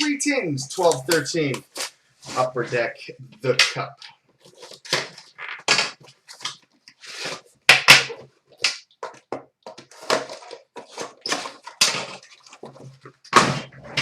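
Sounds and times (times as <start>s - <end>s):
card packaging rustling and crackling: 0.8s - 2.8s, 4.4s - 7.5s, 8.2s - 14.0s.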